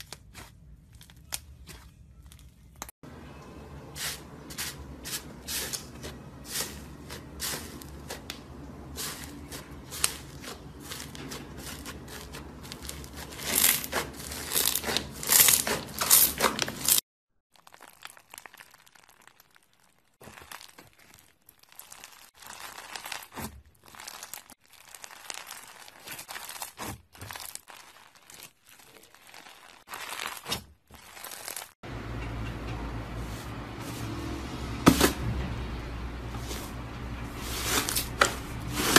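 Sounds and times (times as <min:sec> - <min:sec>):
slime crackling and popping: 0:10.0 - 0:31.7.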